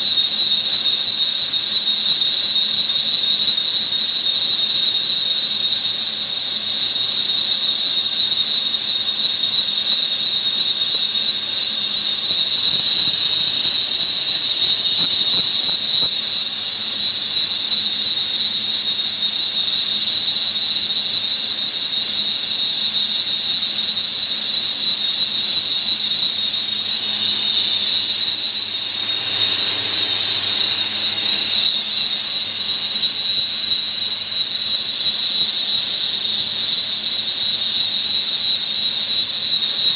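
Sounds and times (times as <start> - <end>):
high-pitched squeal: 9.7 - 39.9.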